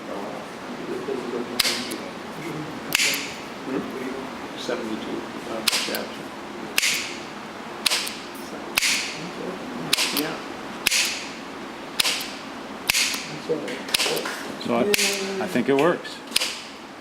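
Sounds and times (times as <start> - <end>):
solenoid shaft clicking: 2.9 - 3.3, 6.8 - 7.1, 9.9 - 11.3, 12.0 - 13.3.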